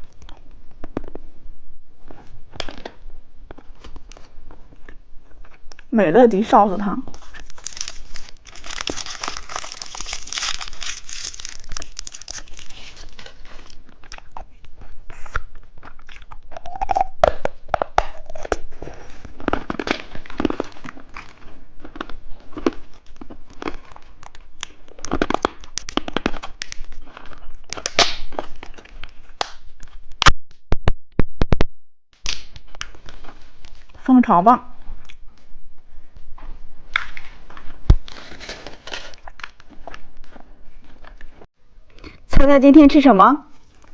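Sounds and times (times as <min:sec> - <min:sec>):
plastic wrapper crinkling: 0:07.1 - 0:14.4, 0:17.8 - 0:30.0, 0:36.9 - 0:41.4
chewing hard candy: 0:07.2 - 0:29.4.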